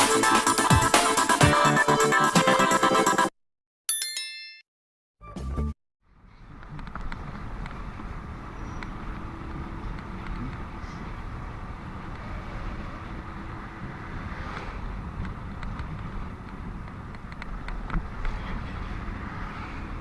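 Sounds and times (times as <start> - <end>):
rumble of engines and tyres: 6.0 - 20.0.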